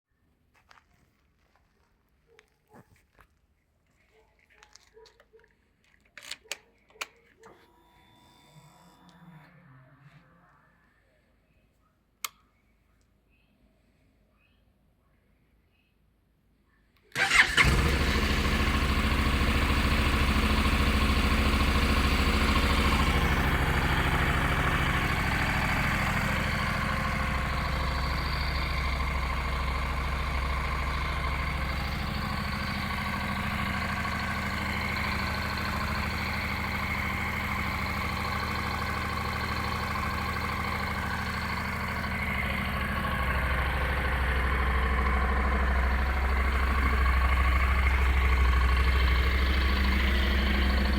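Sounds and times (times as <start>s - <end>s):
motorcycle engine starting and idling: 17.1s - 50.9s.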